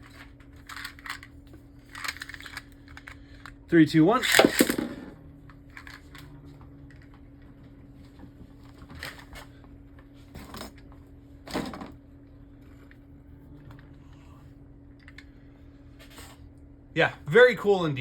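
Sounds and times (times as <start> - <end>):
spinning top clacking: 4.2 - 5.1
spinning top humming: 4.2 - 7.1.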